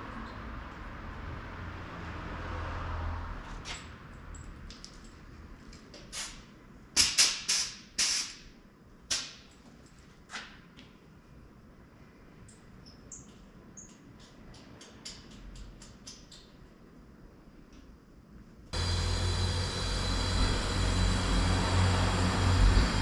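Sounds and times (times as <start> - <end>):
passing vehicle: 0.0 - 4.2, 18.8 - 23.0.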